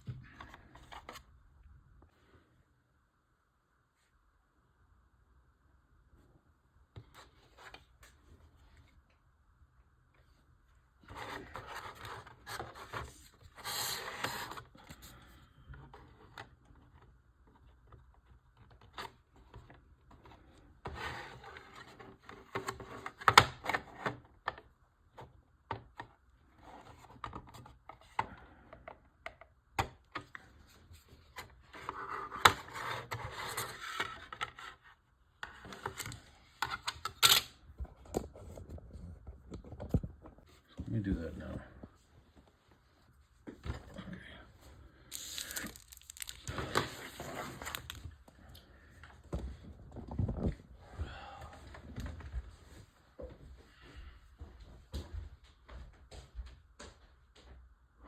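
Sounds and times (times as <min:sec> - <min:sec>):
plastic parts scraping and rubbing: 0:11.0 - 0:15.1, 0:31.0 - 0:41.6, 0:45.0 - 0:48.2.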